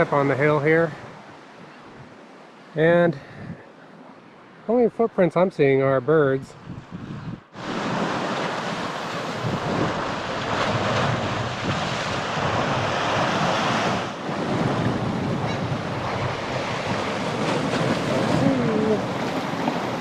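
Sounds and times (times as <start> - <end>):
ocean waves washing ashore: 0.0 - 5.4, 6.0 - 20.0
wind buffeting microphone: 6.2 - 20.0.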